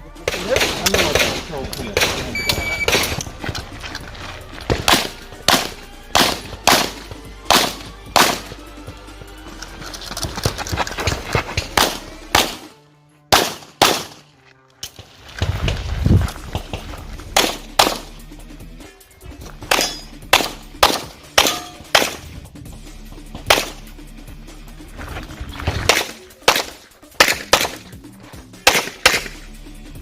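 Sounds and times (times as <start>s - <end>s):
handgun shots: 0.2s - 3.3s, 4.7s - 8.6s, 11.7s - 14.3s, 17.4s - 18.2s, 19.6s - 22.3s, 23.4s - 23.8s, 25.8s - 28.0s, 28.6s - 29.4s.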